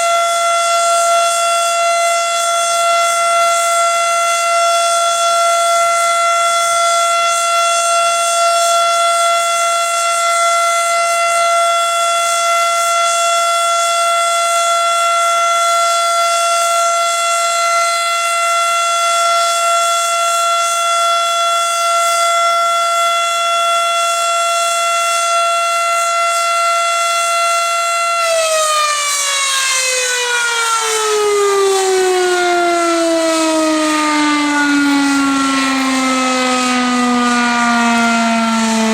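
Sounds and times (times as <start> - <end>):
warning siren steady tone: 0.0 - 38.9
siren winding down: 26.3 - 38.9.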